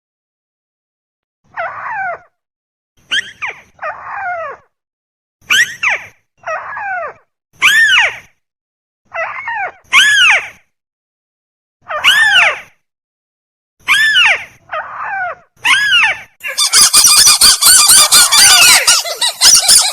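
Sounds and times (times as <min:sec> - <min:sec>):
rail bird squealing calls: 0:15.7 - 0:19.9.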